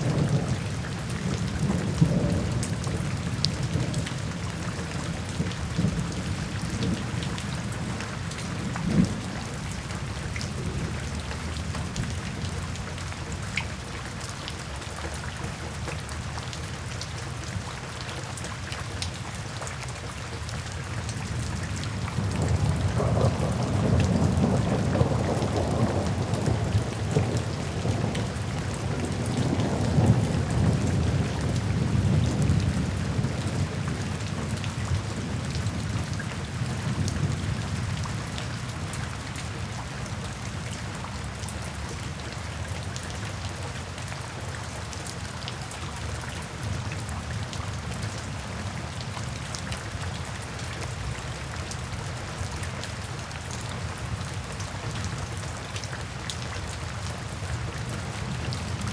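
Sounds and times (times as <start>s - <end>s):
low roll of thunder: 0.0s - 9.9s, 22.0s - 38.8s
steady rain: 0.0s - 58.9s.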